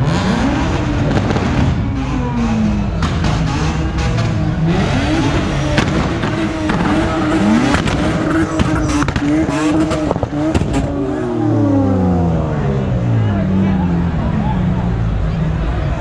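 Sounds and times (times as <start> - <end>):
car engine revving hard: 0.0 - 13.5
exhaust pops and cracks: 5.8 - 11.0.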